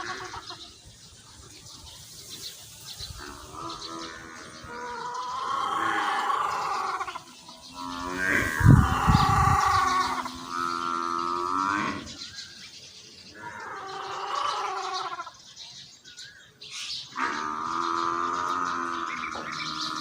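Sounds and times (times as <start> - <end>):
animal calling in drawn-out cries: 3.2 - 12.1.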